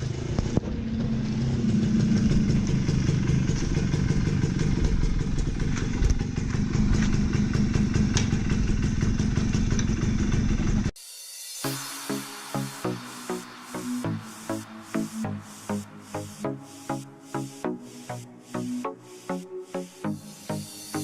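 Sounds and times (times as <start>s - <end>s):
two-stroke motorcycle engine running: 0.0s - 10.9s.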